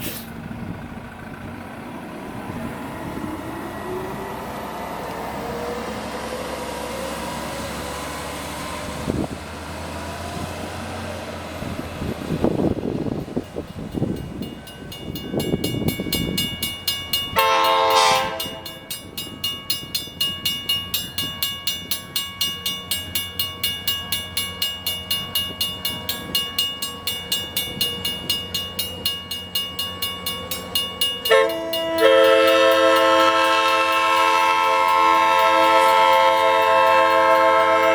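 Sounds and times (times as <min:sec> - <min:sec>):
train low rumble: 0:00.0 - 0:37.9
train air horn: 0:17.4 - 0:18.7, 0:31.3 - 0:37.9
rapid even ringing beat: 0:18.6 - 0:32.0.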